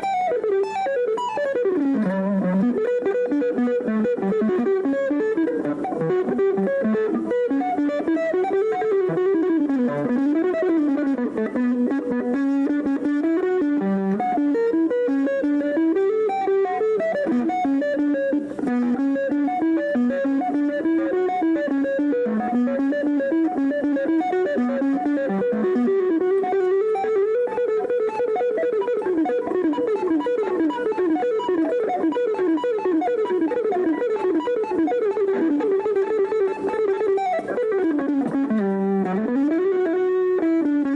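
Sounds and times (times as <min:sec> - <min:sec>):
guitar playing fast melodic runs: 0:00.0 - 0:40.9.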